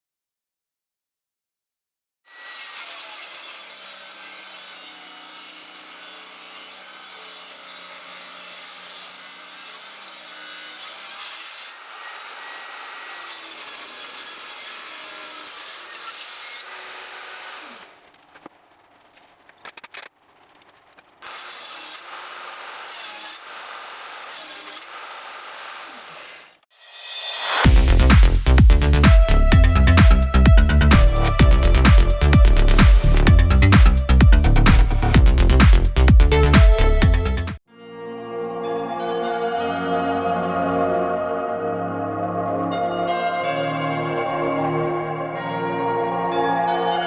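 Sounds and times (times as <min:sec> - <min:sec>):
saw cutting wood: 0:02.3 - 0:37.6.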